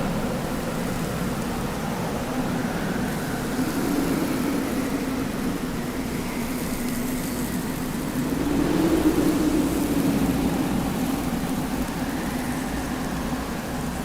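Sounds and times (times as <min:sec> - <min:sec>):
wind howling: 0:07.5 - 0:12.6.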